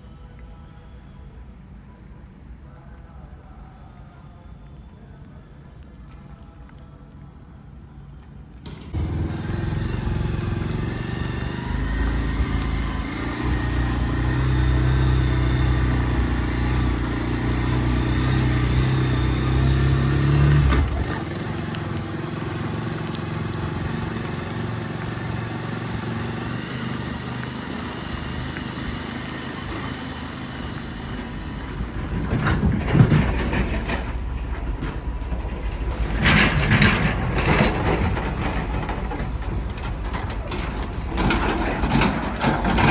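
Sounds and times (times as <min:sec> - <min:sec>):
vehicle engine running: 0:08.6 - 0:42.9.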